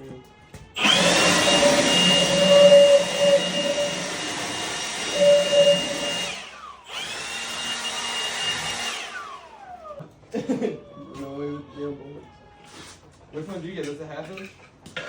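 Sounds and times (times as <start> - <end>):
motor-driven tool whining: 0.8 - 9.4.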